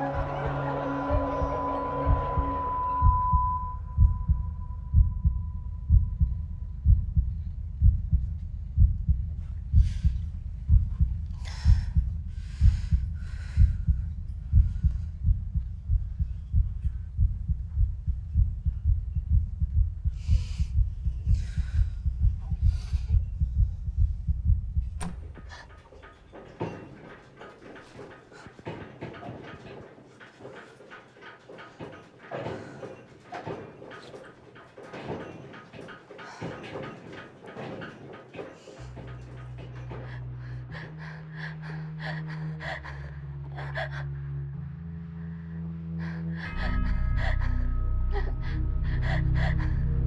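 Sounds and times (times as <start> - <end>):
high ringing tone: 0.0 - 6.1
low pulsing heartbeat: 0.0 - 25.4, 48.1 - 50.0.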